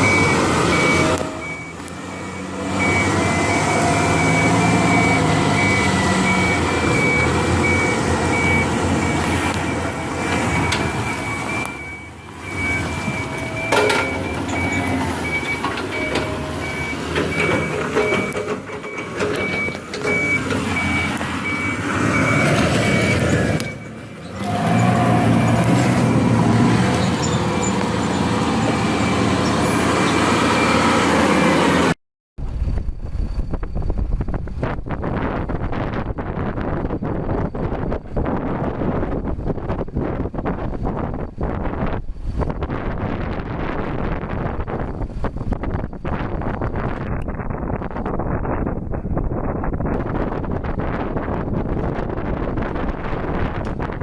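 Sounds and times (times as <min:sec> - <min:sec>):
reversing alarm beeping: 0:00.0 - 0:25.7
diesel engines under load: 0:00.0 - 0:54.0.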